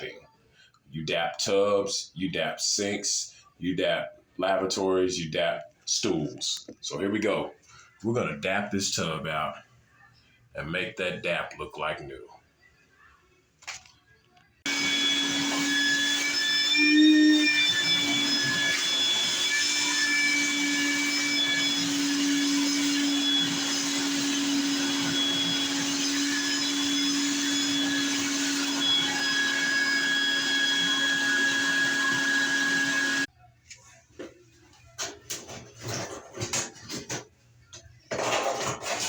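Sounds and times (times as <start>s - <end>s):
vacuum motor whine: 14.7s - 33.3s.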